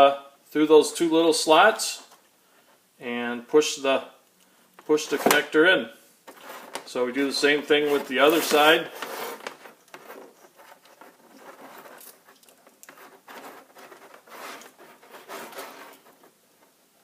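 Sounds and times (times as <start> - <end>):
wire scratching and ticking: 7.5 - 16.8.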